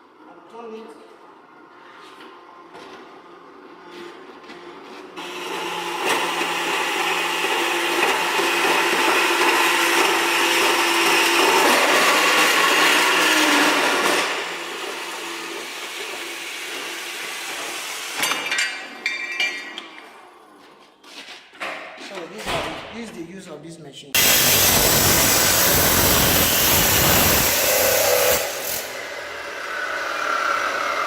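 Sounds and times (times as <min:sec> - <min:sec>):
metal-cutting machine grinding pipe: 0:05.2 - 0:18.4, 0:24.2 - 0:31.0.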